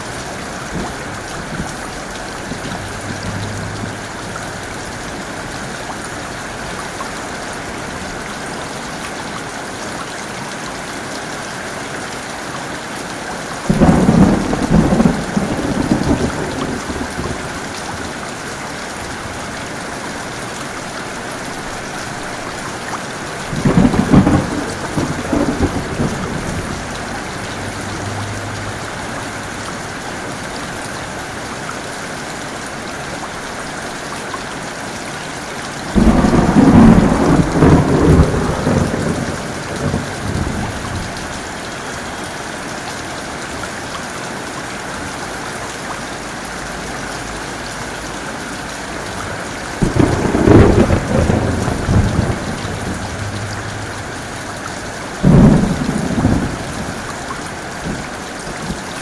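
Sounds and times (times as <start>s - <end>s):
thunder rumbling: 0.0s - 7.0s, 13.7s - 18.0s, 23.2s - 30.8s, 35.9s - 41.2s, 49.2s - 59.0s
heavy rain: 0.0s - 59.0s.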